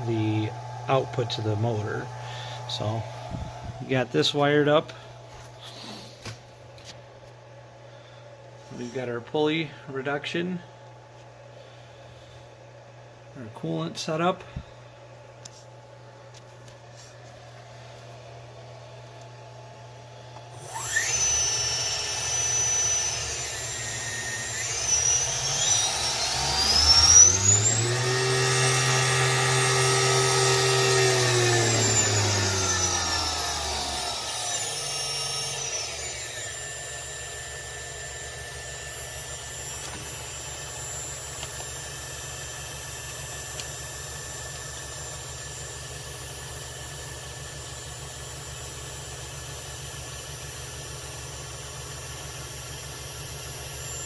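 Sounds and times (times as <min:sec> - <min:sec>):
spindle motor whine: 0:00.0 - 0:06.2, 0:19.9 - 0:48.9, 0:49.5 - 0:54.0
steady motor hum: 0:00.0 - 0:54.0.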